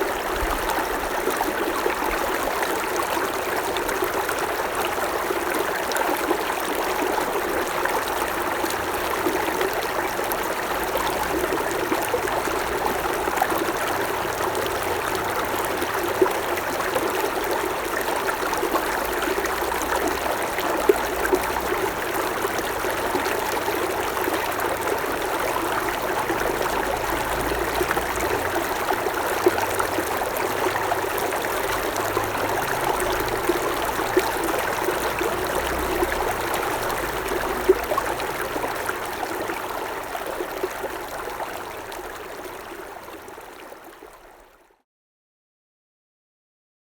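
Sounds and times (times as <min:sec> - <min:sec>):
creek water running over rocks: 0:00.0 - 0:44.0.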